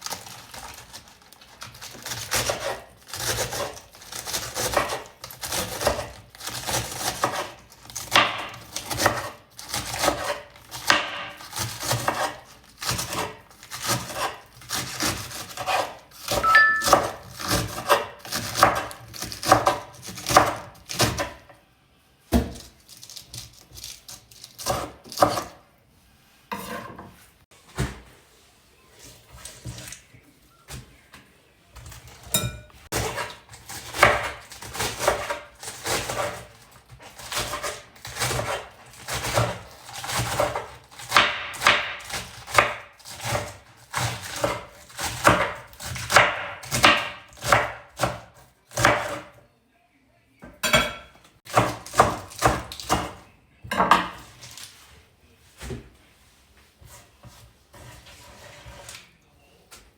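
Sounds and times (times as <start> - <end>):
knife chopping on wooden board: 1.8 - 21.4, 22.3 - 22.7, 24.6 - 25.6, 32.4 - 49.3, 50.6 - 54.3.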